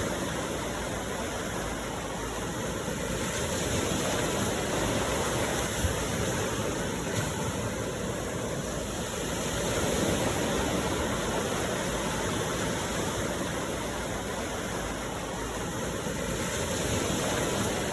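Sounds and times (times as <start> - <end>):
steady rain: 0.0 - 3.2, 10.3 - 16.3.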